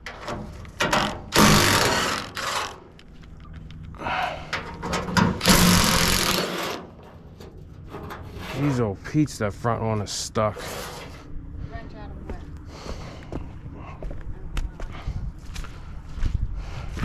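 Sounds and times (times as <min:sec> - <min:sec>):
impact wrench hammering: 0:00.8 - 0:02.8, 0:05.0 - 0:06.8.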